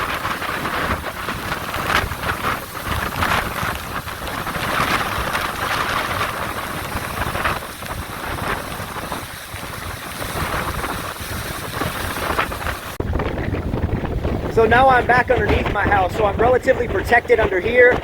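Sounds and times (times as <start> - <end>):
strong wind gusting on microphone: 0.0 - 18.0.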